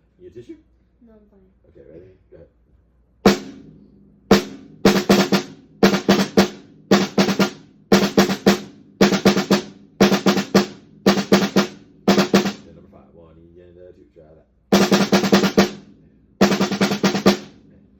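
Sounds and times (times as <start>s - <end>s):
drum struck in quick groups: 3.3s - 12.7s, 14.7s - 17.7s.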